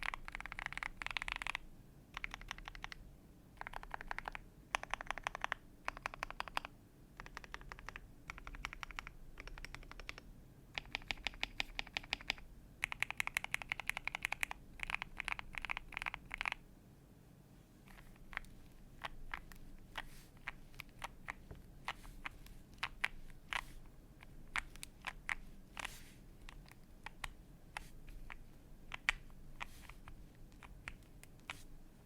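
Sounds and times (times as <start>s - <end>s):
mechanical keyboard keystrokes: 0.0s - 1.6s, 2.2s - 3.0s, 3.6s - 10.2s, 10.8s - 16.6s.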